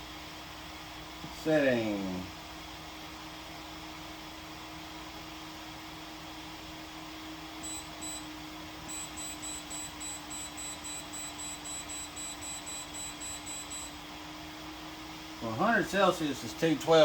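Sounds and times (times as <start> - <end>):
control panel beeping: 7.6 - 8.3, 8.9 - 14.0
steady low hum: 7.6 - 14.1.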